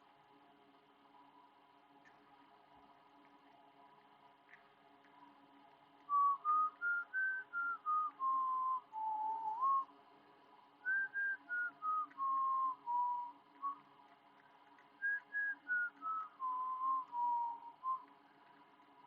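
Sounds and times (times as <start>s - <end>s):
faint steady hum: 0.0s - 19.0s
person whistling a tune: 6.1s - 9.9s, 10.8s - 13.8s, 15.0s - 18.1s.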